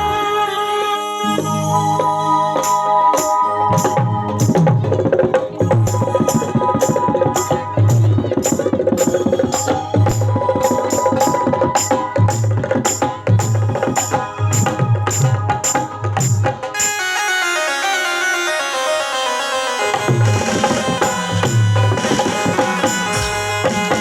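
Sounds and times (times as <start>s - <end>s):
band music through pa: 1.2s - 24.0s
hand drums: 1.4s - 17.1s, 19.8s - 24.0s
held instrument tones: 16.7s - 24.0s.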